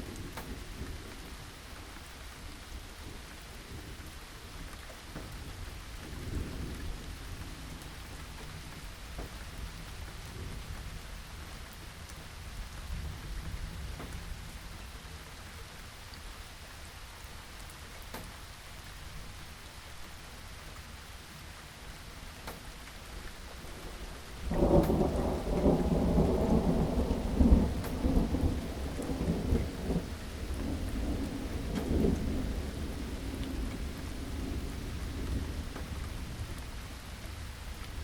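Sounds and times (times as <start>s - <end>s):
steady rain falling: 0.0s - 38.0s
thunder rumbling: 23.5s - 38.0s.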